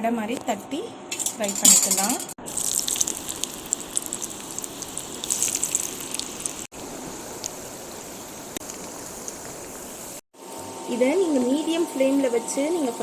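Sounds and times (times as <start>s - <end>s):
food deep-frying in oil: 2.4s - 10.2s.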